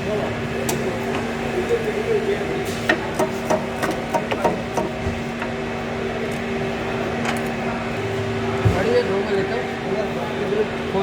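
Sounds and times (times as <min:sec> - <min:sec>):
workshop hum: 0:00.0 - 0:11.0
sharp clicks and knocks: 0:02.9 - 0:05.5.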